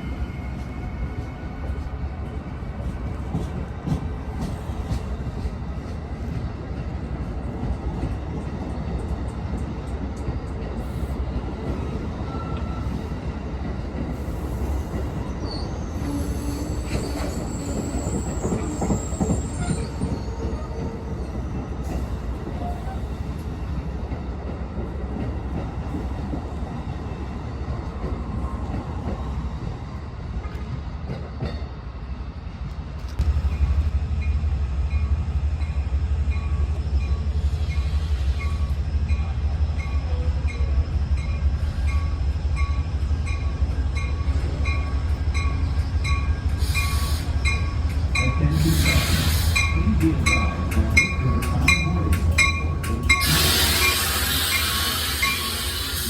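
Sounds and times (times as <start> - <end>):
train running on rails: 0.0 - 56.0
high wheel squeal: 15.4 - 20.8, 53.0 - 56.0.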